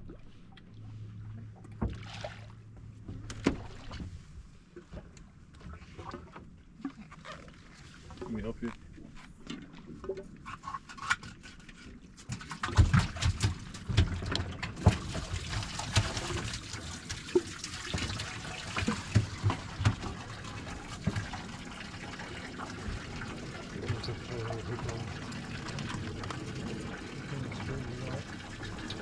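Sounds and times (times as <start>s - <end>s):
water splashing and sloshing: 0.0s - 29.0s
fish thrashing heavy thumps: 17.9s - 20.3s.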